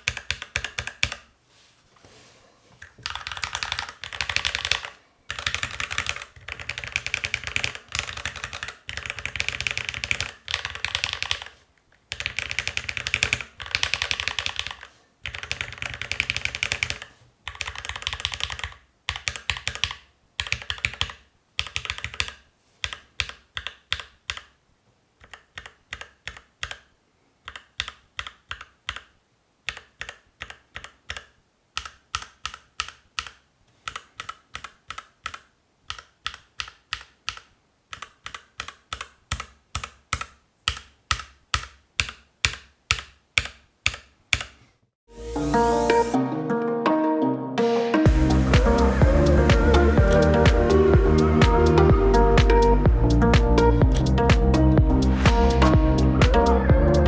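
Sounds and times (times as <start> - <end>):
mechanical keyboard typing: 0.0 - 1.2, 3.0 - 11.5, 12.1 - 24.6, 25.2 - 44.6, 53.4 - 54.6.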